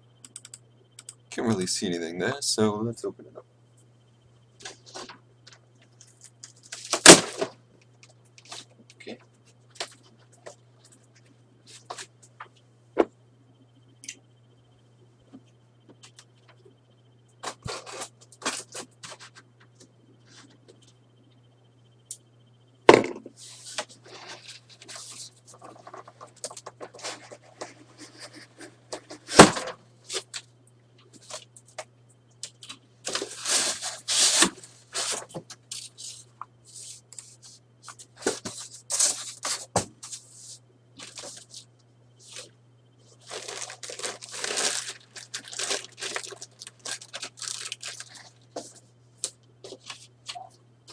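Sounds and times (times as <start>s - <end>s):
low electrical hum: 0.0s - 50.9s
cardboard tearing: 33.1s - 35.2s, 43.3s - 48.1s.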